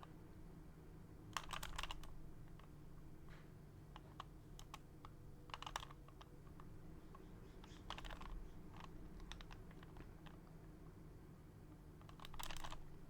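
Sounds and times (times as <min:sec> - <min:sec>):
puzzle cube plastic clicks: 0:12.0 - 0:12.9.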